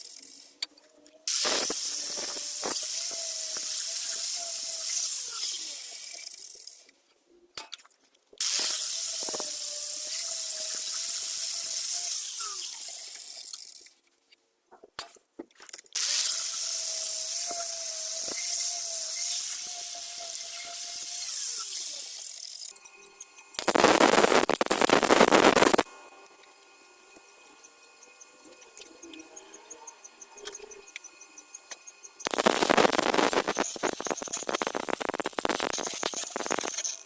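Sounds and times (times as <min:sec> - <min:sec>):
high hissing from a tool: 0:01.3 - 0:06.8, 0:08.4 - 0:13.8, 0:16.0 - 0:22.7, 0:23.6 - 0:25.9, 0:32.2 - 0:37.0.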